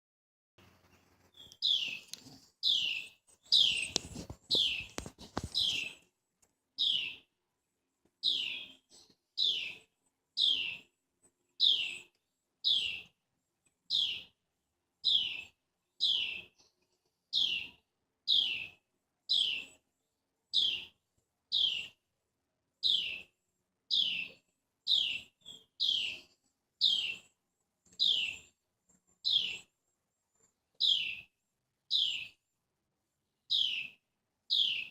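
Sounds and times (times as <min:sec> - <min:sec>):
bird chirping: 0:01.2 - 0:06.0, 0:06.8 - 0:07.3, 0:08.2 - 0:10.9, 0:11.6 - 0:13.2, 0:13.8 - 0:14.4, 0:15.0 - 0:19.9, 0:20.5 - 0:22.0, 0:22.8 - 0:23.3, 0:23.9 - 0:29.8, 0:30.7 - 0:32.4, 0:33.2 - 0:34.9.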